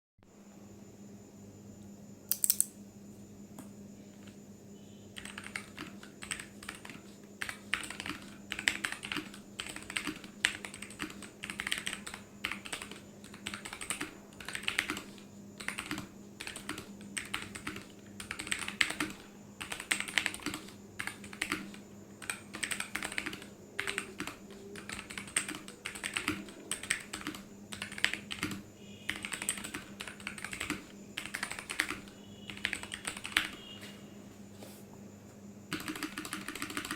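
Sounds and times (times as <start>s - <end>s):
mechanical keyboard typing: 2.3s - 2.7s, 5.2s - 33.6s, 35.7s - 36.9s.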